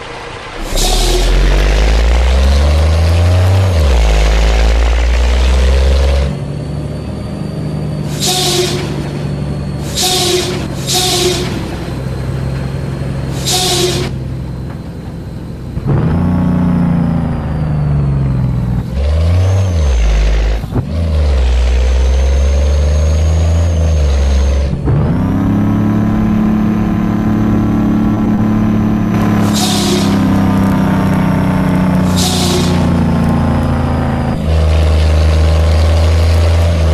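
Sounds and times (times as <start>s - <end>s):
truck diesel engine under load: 0.0s - 36.9s
compressed air hissing: 9.8s - 11.6s, 13.3s - 14.2s, 29.4s - 30.3s.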